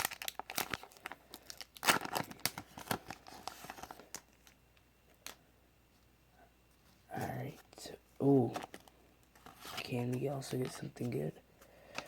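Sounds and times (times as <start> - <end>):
foil wrapper crinkling and tearing: 0.0 - 4.6.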